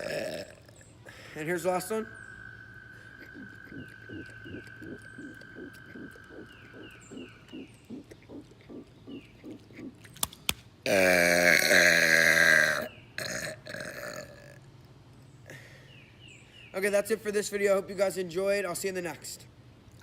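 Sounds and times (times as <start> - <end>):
man burping loudly: 0.0 - 0.8, 10.8 - 14.6
frogs croaking: 0.0 - 10.2, 10.9 - 14.7
sharp clicks: 3.2 - 10.7.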